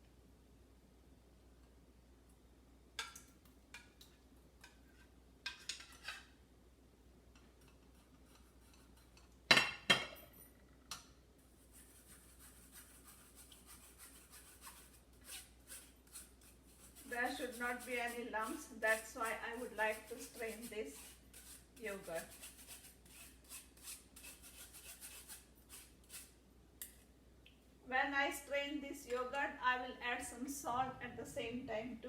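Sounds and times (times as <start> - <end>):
spoon scraping through strainer: 11.7 - 26.3.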